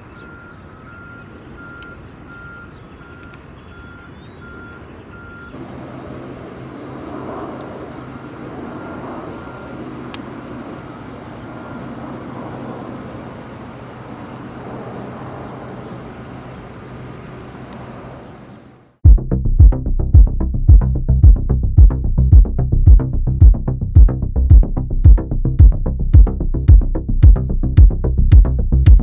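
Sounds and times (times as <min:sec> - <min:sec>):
heavy engine hum: 0:00.0 - 0:29.0
reversing alarm beeping: 0:00.1 - 0:05.6, 0:08.6 - 0:10.0
rush of machinery noise: 0:05.6 - 0:18.0.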